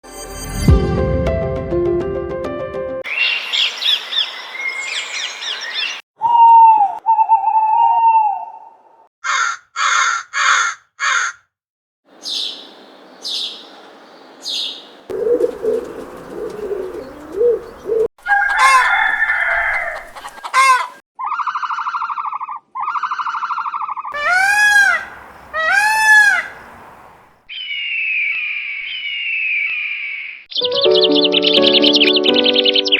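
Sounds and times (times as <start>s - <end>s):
long falling bird cry: 3.1s - 8.6s, 12.2s - 32.9s
harsh bird calls: 12.1s - 32.9s
bird clucking: 14.5s - 21.0s, 23.3s - 27.2s.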